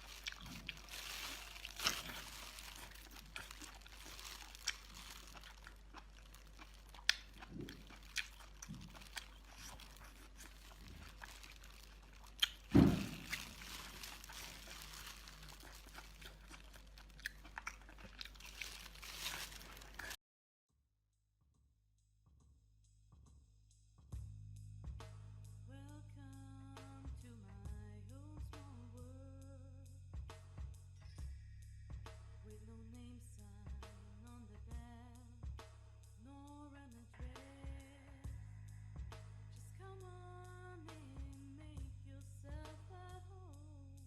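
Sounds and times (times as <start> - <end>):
person chewing and crunching food: 0.0 - 20.2
loud thump: 12.7 - 13.4.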